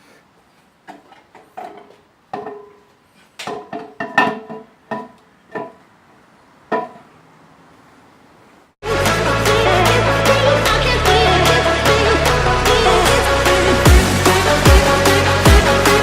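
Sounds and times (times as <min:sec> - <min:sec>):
metal clanks and knocks: 0:00.9 - 0:05.8, 0:06.7 - 0:07.1.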